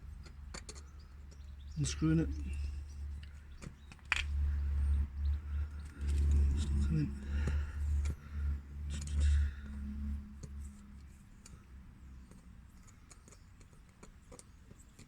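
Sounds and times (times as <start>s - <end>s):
hand tools clicking and tapping: 0.0s - 1.7s, 2.4s - 4.4s, 11.4s - 15.0s
low rumble: 4.1s - 10.9s.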